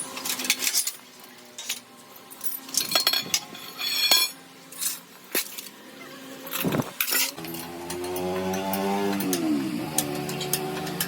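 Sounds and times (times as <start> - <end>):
metal tools clinking and knocking: 0.0 - 5.7, 6.5 - 11.0.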